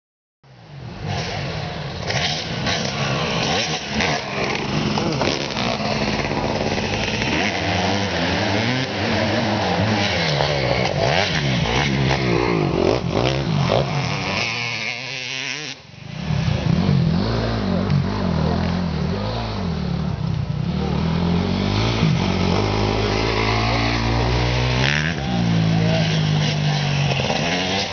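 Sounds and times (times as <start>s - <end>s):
motorcycle engine revving: 0.7s - 27.9s.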